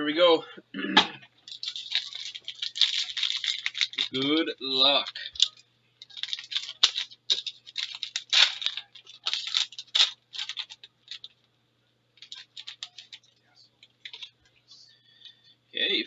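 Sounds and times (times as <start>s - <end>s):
card packaging crinkling and scratching: 1.4s - 11.5s, 12.2s - 14.4s.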